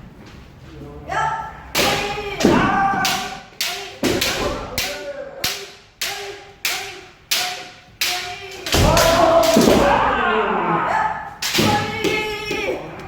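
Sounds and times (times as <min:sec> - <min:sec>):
bamboo sword strikes cracking: 0:01.8 - 0:10.0.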